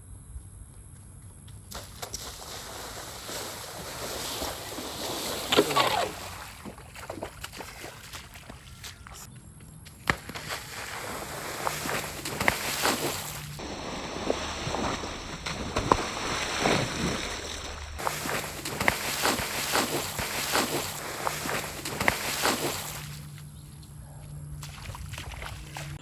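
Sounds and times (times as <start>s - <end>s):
shallow water splashing: 1.7s - 9.2s, 10.1s - 23.6s, 24.6s - 26.0s
sharp thumps: 11.9s - 22.9s.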